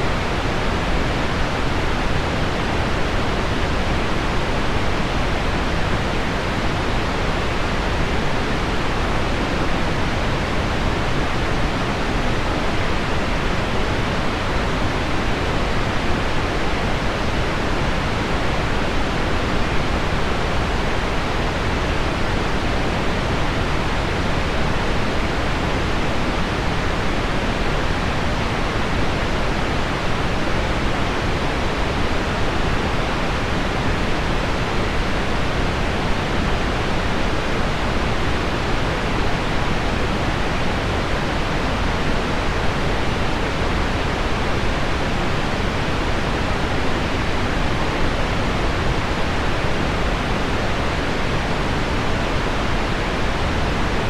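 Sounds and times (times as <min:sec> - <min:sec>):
deep pink noise hiss: 0:00.0 - 0:54.0.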